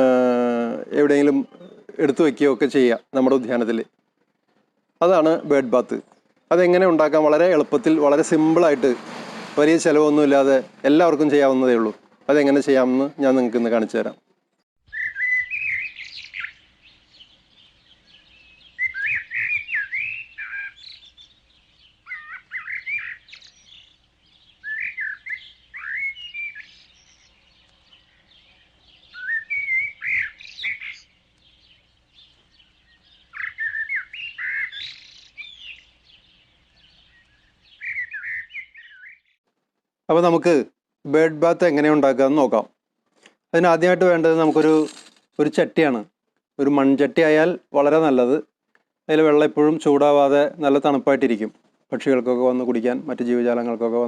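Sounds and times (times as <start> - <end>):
songbird warbling: 14.9 - 39.4.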